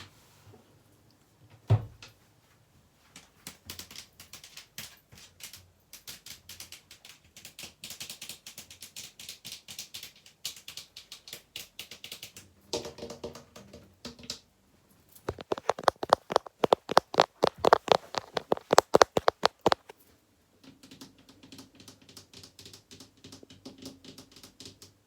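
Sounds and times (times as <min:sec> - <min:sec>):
asmr tapping and scratching: 0:15.3 - 0:19.9.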